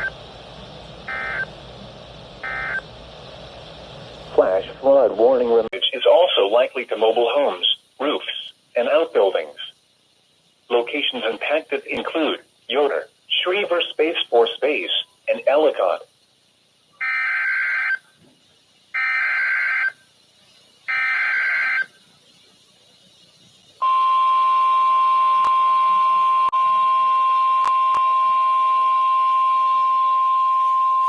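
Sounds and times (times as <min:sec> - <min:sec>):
steady warning alarm tone: 0:00.0 - 0:05.7, 0:17.0 - 0:18.1, 0:18.9 - 0:20.1, 0:20.8 - 0:22.0, 0:23.8 - 0:31.0
buzzy digital data bursts: 0:00.0 - 0:09.8, 0:18.7 - 0:25.1.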